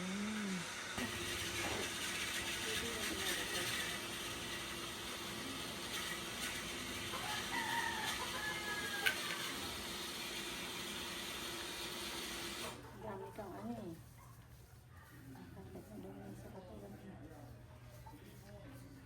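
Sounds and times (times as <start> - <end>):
rooster crowing: 7.1 - 9.6.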